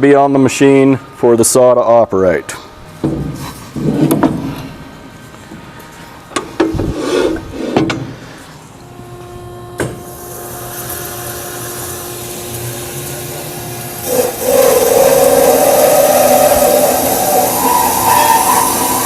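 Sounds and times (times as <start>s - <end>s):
band saw motor humming: 8.2s - 19.0s
saw blade grinding through metal: 13.9s - 19.0s.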